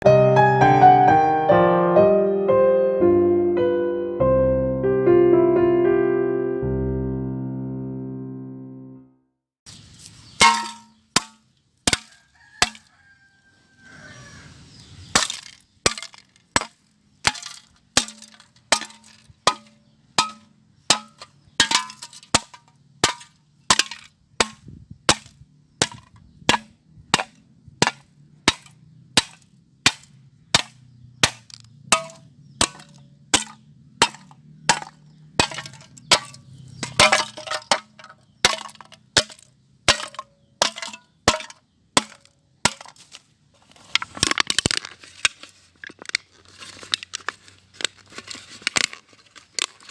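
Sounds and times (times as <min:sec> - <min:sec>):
metal can being struck: 0:10.4 - 0:12.9, 0:15.2 - 0:43.0.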